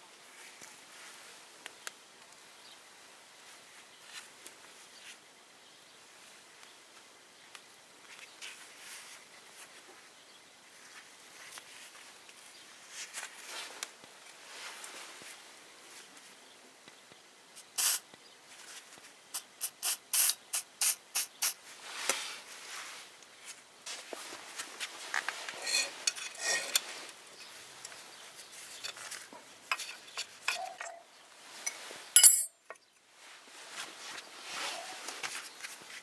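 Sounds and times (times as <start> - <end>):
workshop handling and rubbing: 21.7 - 32.5, 33.2 - 36.0
scraping and clinking: 25.5 - 26.9, 31.6 - 32.7.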